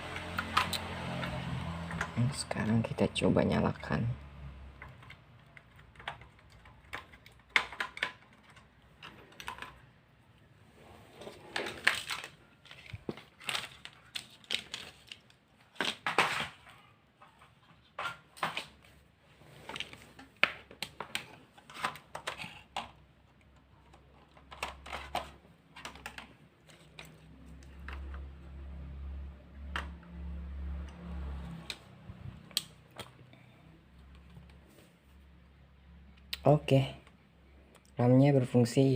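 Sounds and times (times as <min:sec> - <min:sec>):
laptop keys clicking: 0:04.8 - 0:09.8.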